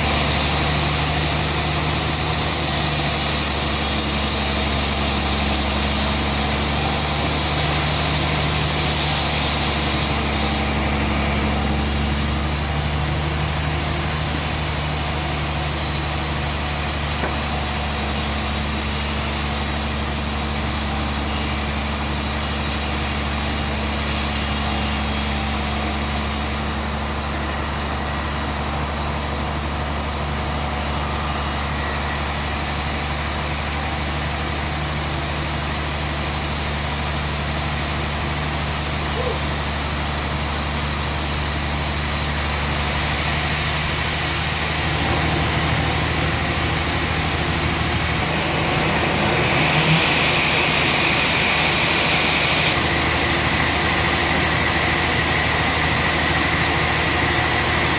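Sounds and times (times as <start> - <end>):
engine running steadily: 0.0 - 57.9.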